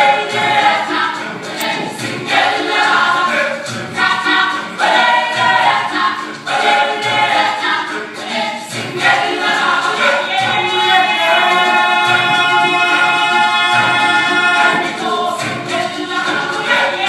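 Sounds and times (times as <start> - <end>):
gospel choir singing: 0.0 - 17.0
low beat: 1.4 - 3.3.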